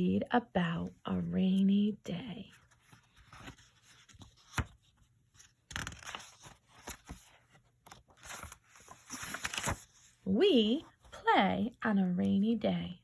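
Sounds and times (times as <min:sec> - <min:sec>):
book pages turning: 0:02.5 - 0:10.2.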